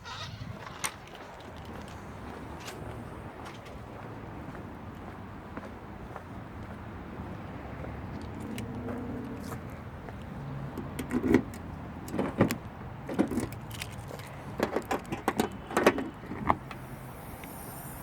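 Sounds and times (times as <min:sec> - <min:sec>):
knocks clanks and rattles: 0:14.6 - 0:16.8.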